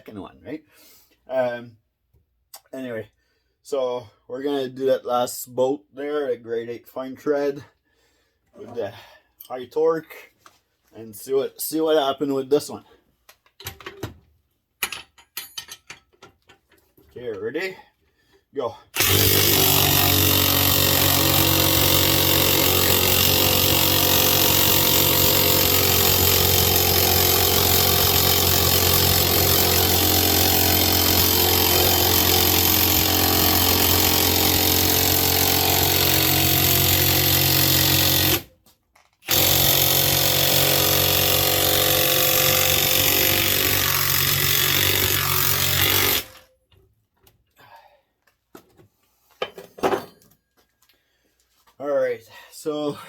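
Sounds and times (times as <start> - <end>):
impact wrench hammering on bolt: 19.0 - 38.5.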